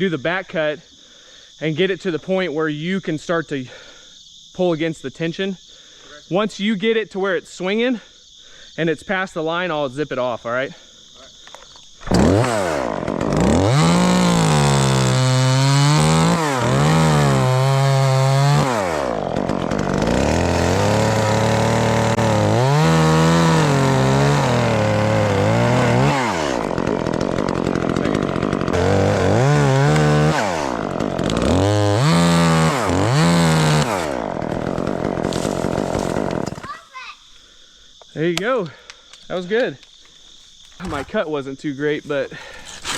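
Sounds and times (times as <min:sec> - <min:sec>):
chainsaw cutting tree: 0:12.0 - 0:36.8, 0:42.5 - 0:42.9.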